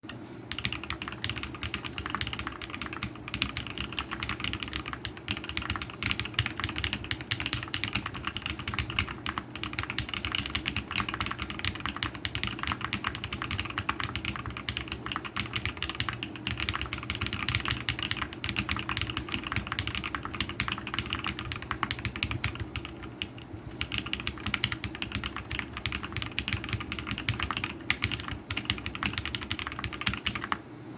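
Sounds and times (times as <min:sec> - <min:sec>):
fast typing on mechanical keyboard: 0:00.5 - 0:30.6.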